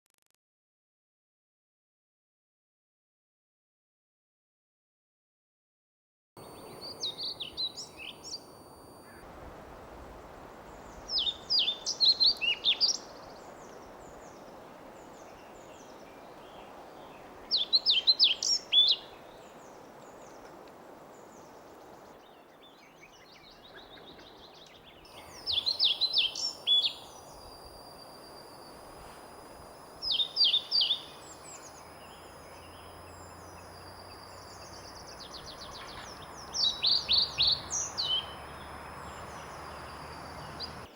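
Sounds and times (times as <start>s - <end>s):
bird singing high sweet notes: 6.4s - 9.3s, 10.7s - 14.4s, 15.0s - 19.7s, 22.0s - 40.9s
background hiss: 6.4s - 40.9s.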